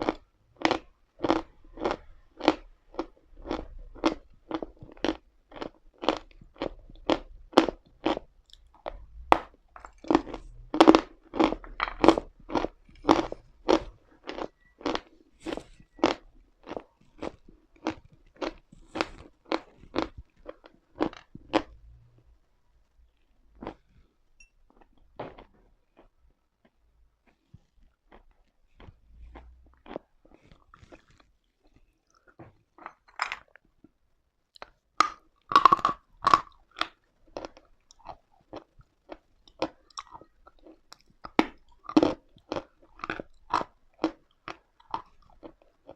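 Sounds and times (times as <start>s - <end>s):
chalk being chewed: 9.8s - 21.6s, 27.2s - 32.2s.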